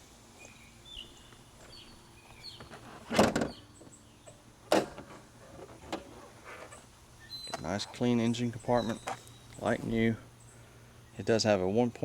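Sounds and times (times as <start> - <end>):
birds chirping: 0.4 - 4.6, 6.7 - 11.9
car hood clunk: 2.6 - 3.9, 4.7 - 6.2.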